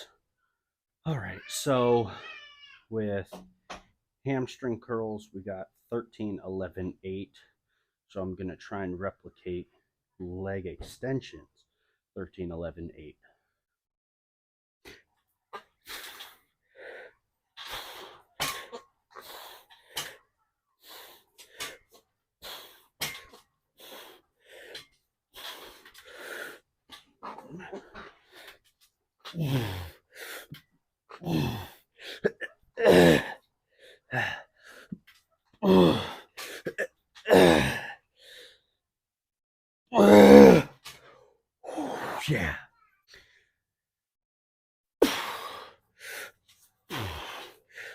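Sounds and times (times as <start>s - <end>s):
man grunting: 29.4s - 29.9s, 31.2s - 31.7s, 32.8s - 33.4s, 35.6s - 36.2s, 37.3s - 37.9s, 40.0s - 40.7s
man breathing hard: 45.0s - 47.9s.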